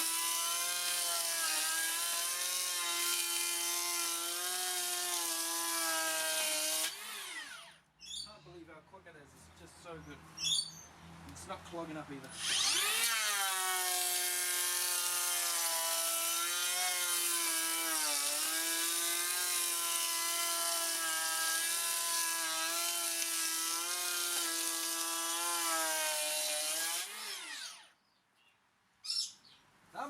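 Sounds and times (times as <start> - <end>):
power planer cutting wood: 0.0 - 7.7, 12.3 - 27.8.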